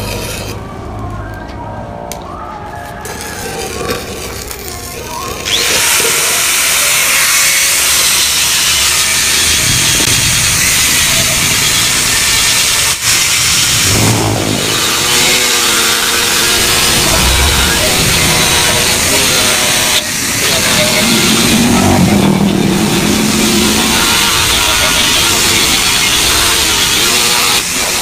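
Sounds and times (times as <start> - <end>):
power tool working on metal: 5.3 - 17.5.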